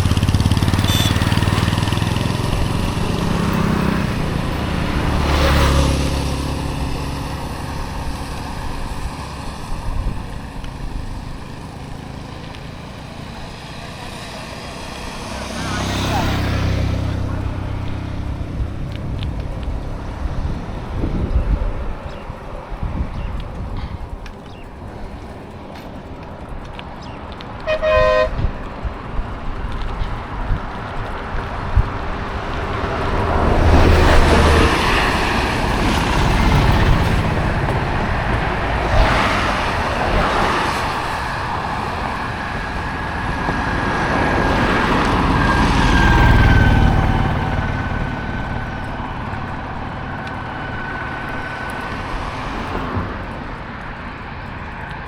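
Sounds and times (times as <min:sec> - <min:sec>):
road traffic passing: 0:00.0 - 0:55.0
vehicle horn toot: 0:00.6 - 0:02.1, 0:27.6 - 0:28.5.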